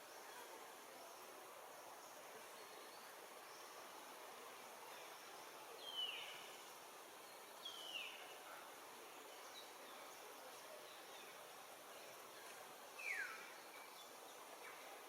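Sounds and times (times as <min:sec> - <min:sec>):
faint outdoor background noise: 0:00.0 - 0:15.0.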